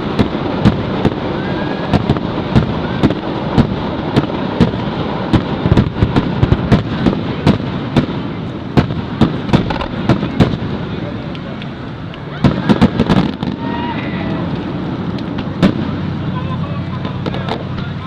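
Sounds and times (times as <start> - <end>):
rumble of fireworks shells: 0.0 - 16.2, 17.0 - 18.0
fireworks bursting and cracking: 0.0 - 18.0.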